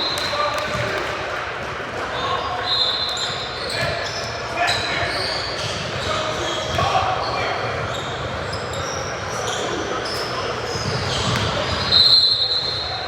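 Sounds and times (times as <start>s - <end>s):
hall hubbub: 0.0s - 13.0s
sneaker squeaks on hardwood court: 2.2s - 13.0s
shrill squeal: 11.8s - 13.0s.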